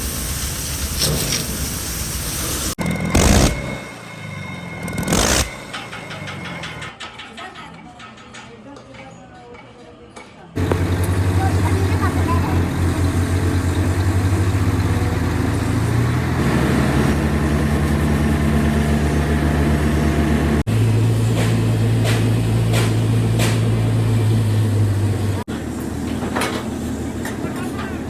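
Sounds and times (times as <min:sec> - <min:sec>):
diesel engine droning: 0:02.5 - 0:06.9, 0:10.6 - 0:28.0.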